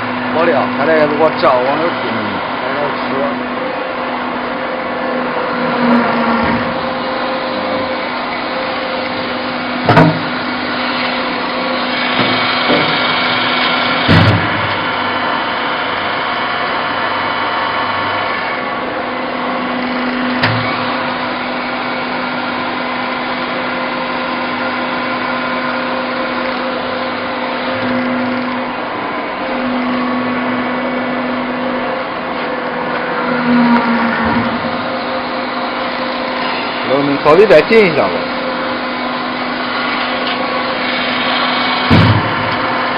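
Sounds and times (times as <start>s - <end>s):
machine humming: 0.0s - 42.9s
sharp knocks: 9.8s - 10.5s, 12.1s - 13.2s, 13.8s - 14.9s, 41.8s - 42.8s.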